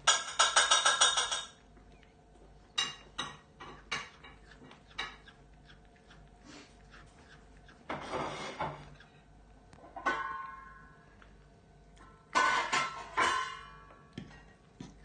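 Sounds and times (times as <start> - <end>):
cutlery clinking against dishes: 0.0 - 1.6, 2.8 - 4.4, 12.4 - 14.6.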